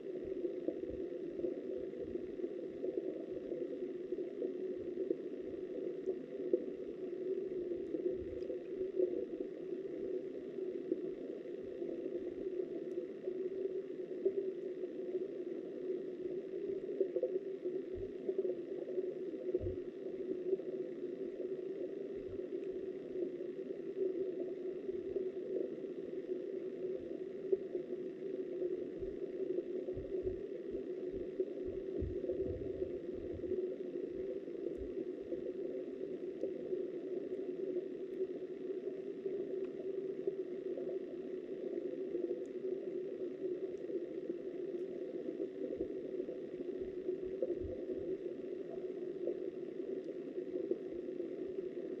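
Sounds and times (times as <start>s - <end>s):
muffled underwater river rush: 0.0s - 52.0s.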